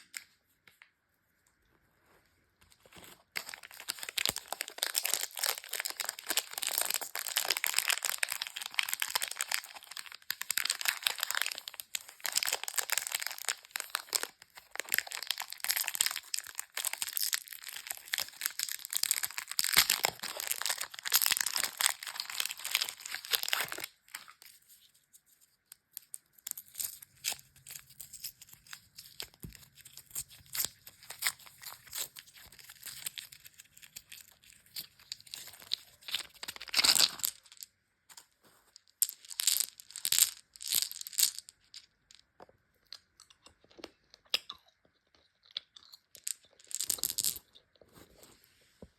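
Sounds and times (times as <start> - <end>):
candy wrappers crinkling and tearing: 2.8 - 24.9, 25.9 - 42.1, 45.0 - 48.1.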